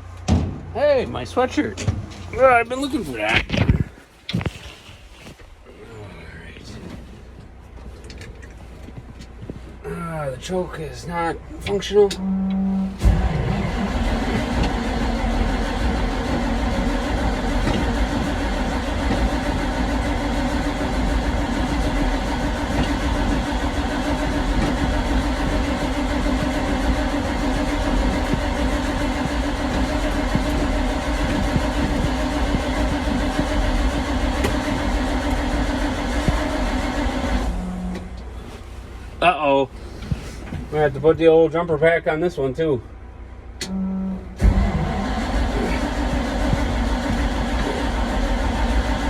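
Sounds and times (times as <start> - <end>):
truck engine cranking: 11.6 - 38.8, 43.5 - 49.0.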